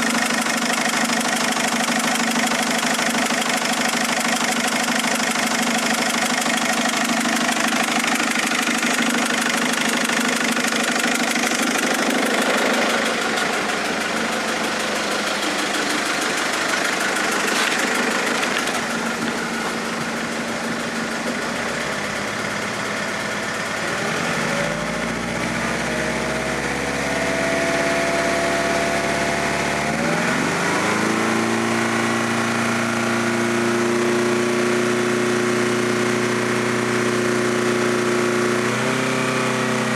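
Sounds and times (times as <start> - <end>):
car engine knocking: 0.0 - 25.9.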